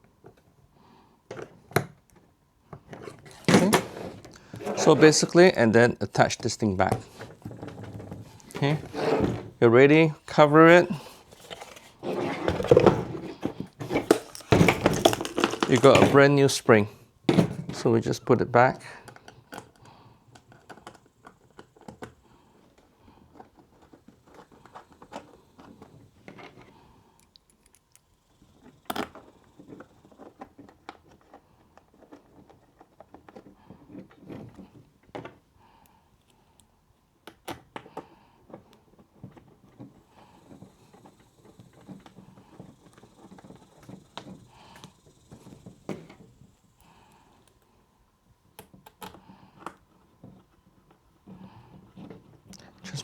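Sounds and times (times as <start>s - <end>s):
clicks of small parts handled: 27.2s - 28.1s.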